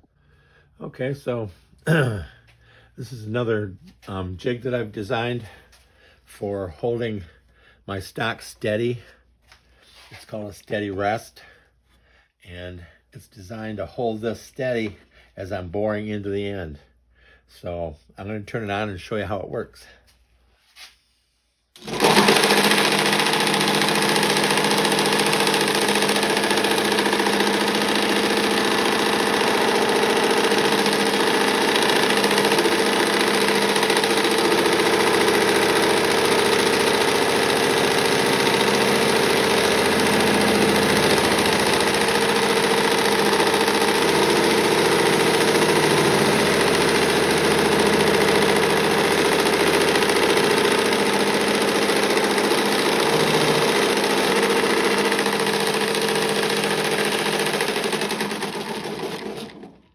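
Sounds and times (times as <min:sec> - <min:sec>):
wood lathe motor running: 0:21.8 - 0:59.9.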